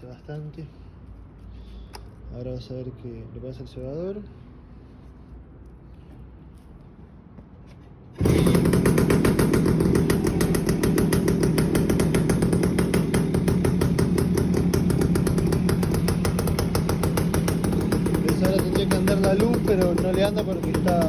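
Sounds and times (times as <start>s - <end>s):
two-stroke motorcycle engine running: 8.2s - 21.0s.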